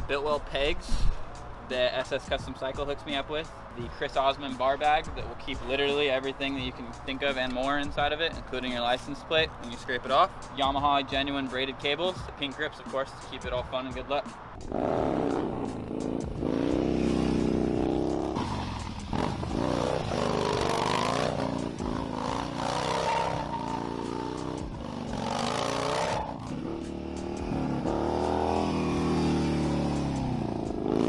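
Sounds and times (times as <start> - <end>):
motorcycle engine revving: 14.6 - 31.0.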